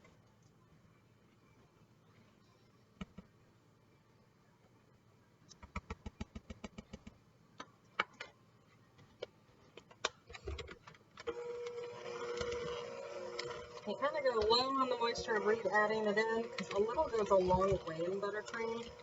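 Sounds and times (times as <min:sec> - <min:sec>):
small motor humming: 0:11.3 - 0:19.0.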